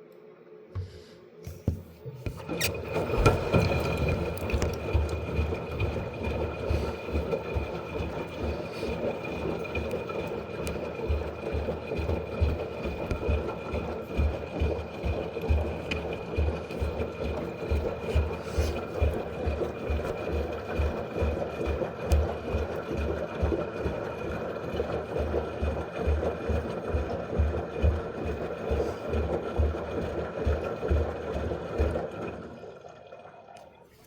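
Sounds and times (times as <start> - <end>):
washing machine whine and churning: 0.8 - 34.0
washing machine drum thumps: 1.7 - 8.5.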